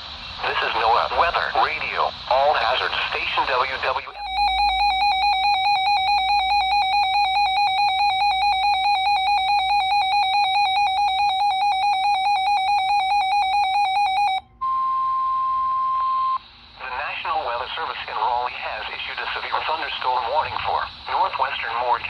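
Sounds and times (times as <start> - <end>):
rapidly pulsing electronic beep: 4.1 - 14.4.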